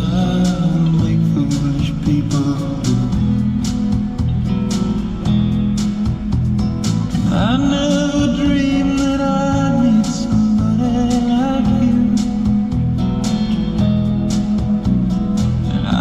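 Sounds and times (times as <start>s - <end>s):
man singing: 0.0s - 4.0s, 7.2s - 13.0s, 15.6s - 16.0s
guitar: 0.0s - 16.0s
steady beat: 0.0s - 16.0s.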